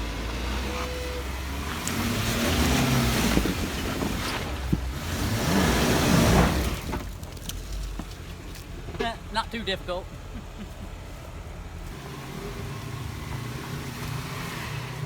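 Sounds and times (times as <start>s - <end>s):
engine revving under load: 0.0s - 7.2s, 11.4s - 15.0s.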